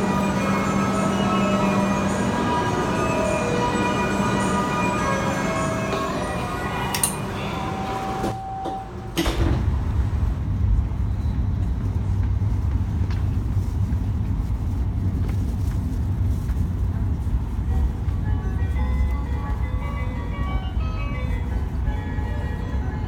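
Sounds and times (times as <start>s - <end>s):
steady tones: 0.0s - 9.1s
train running rumble: 0.0s - 23.0s.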